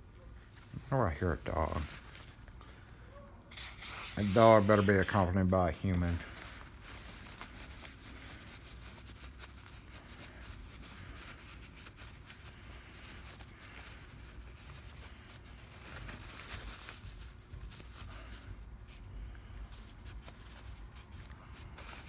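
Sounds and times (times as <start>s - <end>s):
scratching and rubbing: 3.5s - 5.4s.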